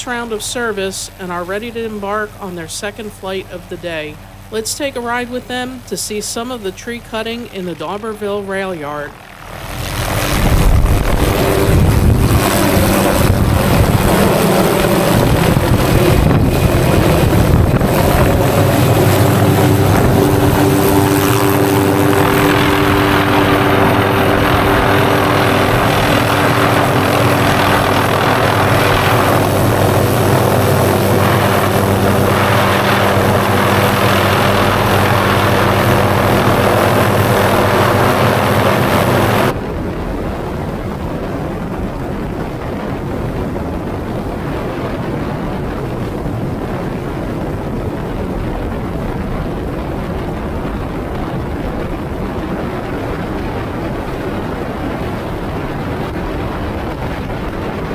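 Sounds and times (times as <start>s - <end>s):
helicopter engine and rotor: 0.0s - 40.3s.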